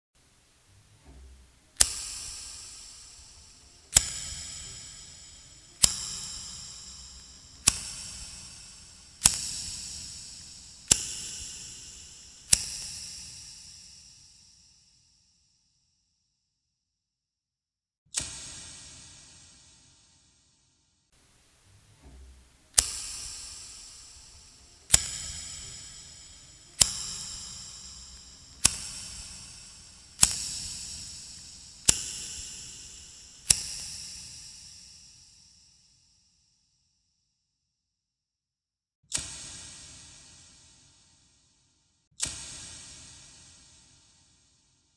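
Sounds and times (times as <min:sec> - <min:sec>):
lighter clicking: 0:01.8 - 0:13.0, 0:22.2 - 0:33.8.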